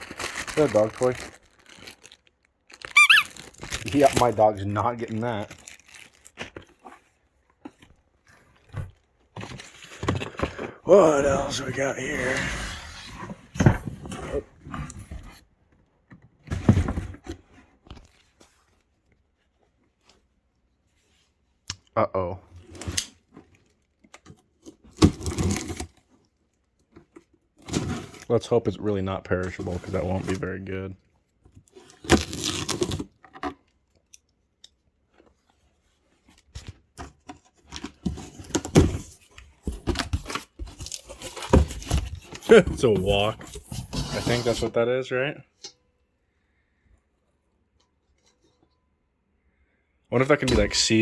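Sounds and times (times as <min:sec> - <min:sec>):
packaging rustling and knocking: 0:00.0 - 0:06.9, 0:37.0 - 0:44.5.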